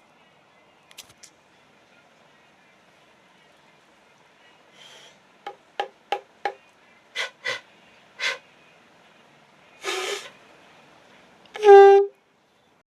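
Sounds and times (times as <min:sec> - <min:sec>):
conch shell puffs and air rush: 0:07.2 - 0:07.6, 0:08.2 - 0:08.4, 0:09.8 - 0:10.3, 0:11.6 - 0:12.1
conch shell pitched blast: 0:11.6 - 0:12.1.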